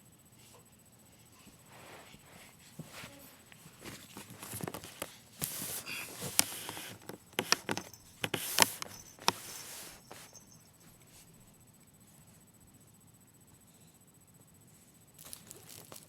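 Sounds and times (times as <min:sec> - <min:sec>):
baby crawling on floor: 0:01.8 - 0:10.4.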